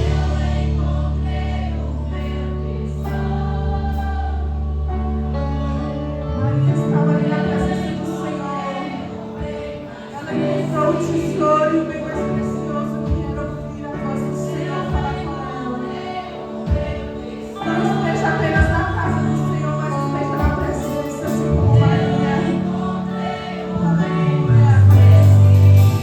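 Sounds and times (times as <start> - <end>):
choir singing gospel: 0.0 - 26.0
instrumental accompaniment: 5.4 - 26.0.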